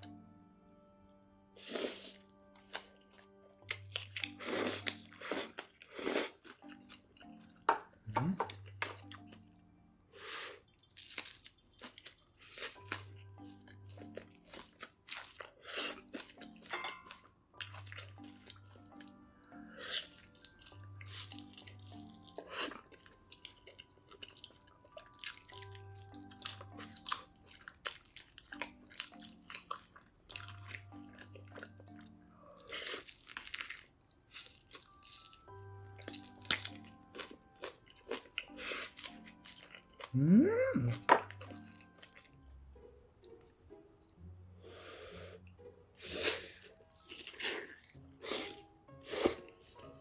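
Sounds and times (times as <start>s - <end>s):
background music with bass line: 8.0s - 8.9s, 40.1s - 41.6s
crunchy chewing and biting: 10.5s - 16.7s, 32.6s - 40.1s, 46.0s - 49.5s.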